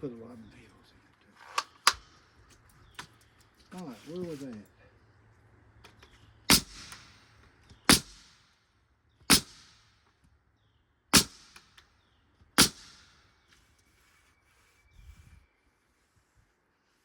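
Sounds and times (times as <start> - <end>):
nail gun firing with sharp crack: 1.5 - 2.2, 6.5 - 8.6, 9.2 - 10.3, 11.1 - 13.4.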